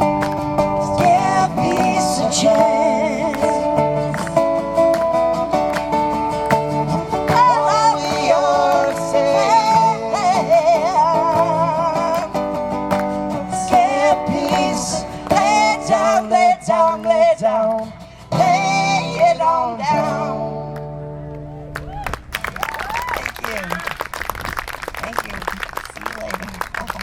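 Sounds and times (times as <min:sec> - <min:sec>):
strummed acoustic guitar: 0:00.0 - 0:21.3
person singing with vibrato: 0:00.6 - 0:05.5, 0:06.9 - 0:12.7, 0:13.3 - 0:20.8.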